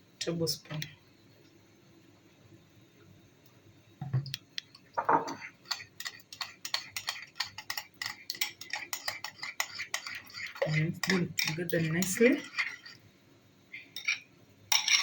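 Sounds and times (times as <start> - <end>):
spoon clicking in a bowl: 5.7 - 12.8.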